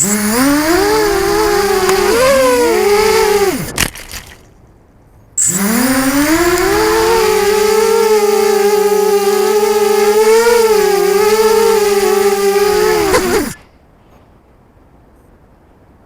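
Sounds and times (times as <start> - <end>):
drone motors whining: 0.0 - 4.3, 5.4 - 13.6.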